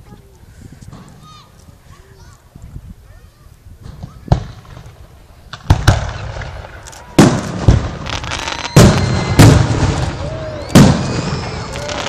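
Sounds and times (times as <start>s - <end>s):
fireworks booms and crackle: 3.8s - 12.0s.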